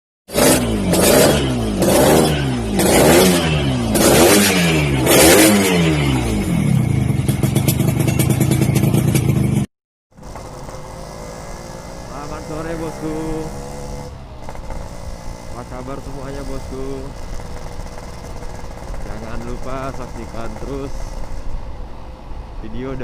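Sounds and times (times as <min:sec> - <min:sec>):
motorcycle engine revving: 0:00.3 - 0:22.0
crackling engine idle: 0:15.5 - 0:21.7.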